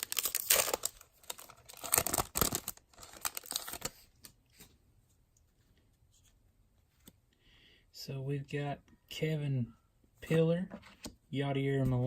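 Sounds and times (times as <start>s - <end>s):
foil wrapper crinkling: 0.0s - 4.0s.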